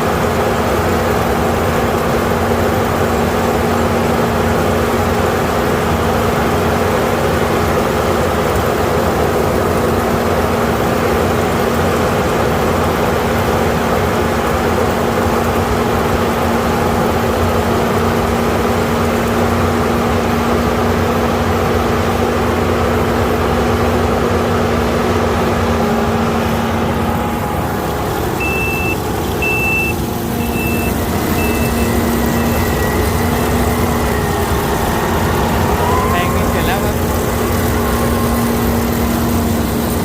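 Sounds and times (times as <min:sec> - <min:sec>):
combine harvester running: 0:00.0 - 0:40.0
short high beeps: 0:28.4 - 0:33.2.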